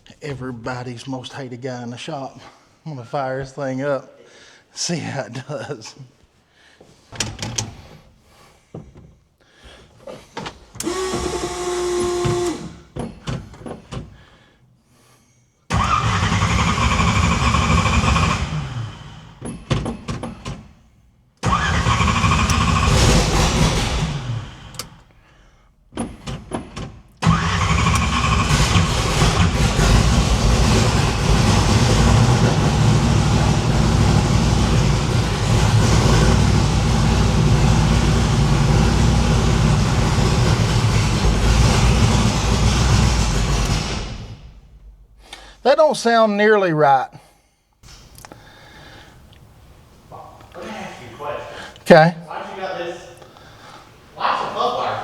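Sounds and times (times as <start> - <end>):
car engine starting and stalling: 9.8 - 14.2, 15.7 - 20.8, 21.4 - 25.2, 26.0 - 45.6.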